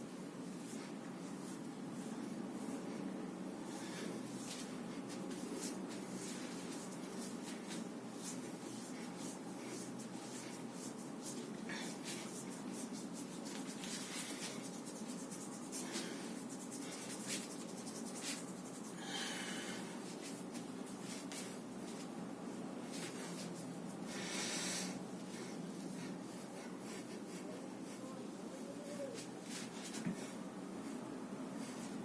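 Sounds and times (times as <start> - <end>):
hands rubbing skin: 4.4 - 19.0, 20.0 - 22.2, 25.2 - 31.0.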